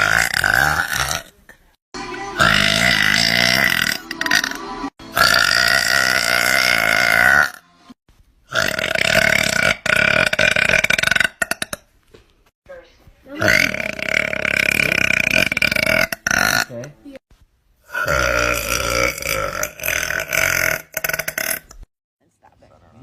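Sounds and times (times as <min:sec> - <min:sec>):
girl burping: 0:00.0 - 0:01.5, 0:02.4 - 0:07.6, 0:13.3 - 0:16.9, 0:17.9 - 0:21.9.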